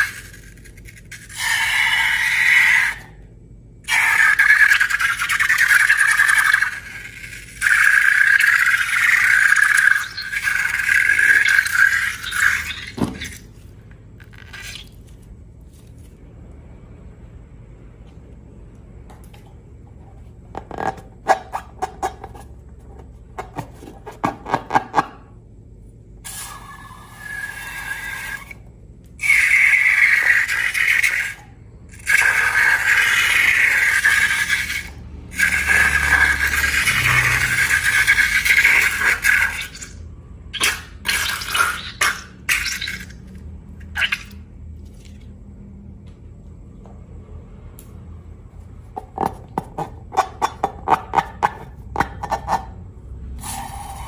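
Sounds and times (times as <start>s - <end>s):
high wavering squealing scrape: 0.0s - 3.2s, 3.8s - 13.6s, 29.2s - 41.0s
faint handling sounds: 14.9s - 16.3s.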